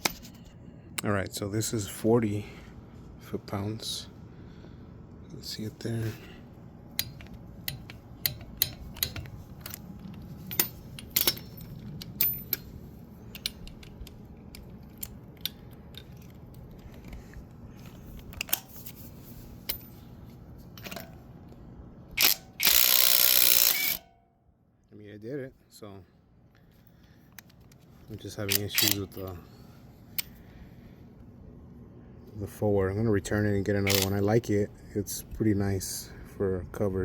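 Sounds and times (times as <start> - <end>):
tools clicking and clattering: 0.0 - 0.5, 7.0 - 20.0, 20.7 - 21.2, 27.4 - 29.4, 33.8 - 34.3
cordless impact wrench hammering: 7.0 - 9.8, 22.2 - 24.1, 33.9 - 34.1.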